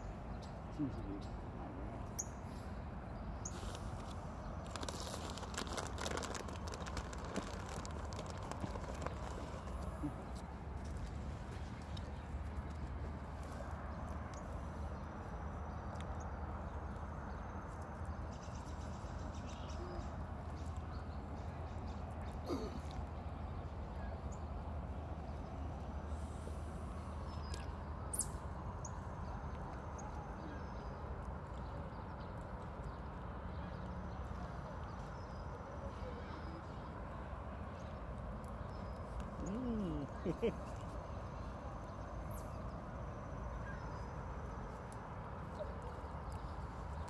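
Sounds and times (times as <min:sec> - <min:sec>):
light hiss: 0:03.4 - 0:04.2.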